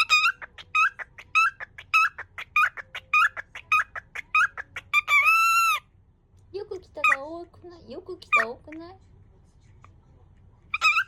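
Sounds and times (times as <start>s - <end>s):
cockatiel chirping speech fragments: 6.6s - 9.1s, 10.7s - 11.0s.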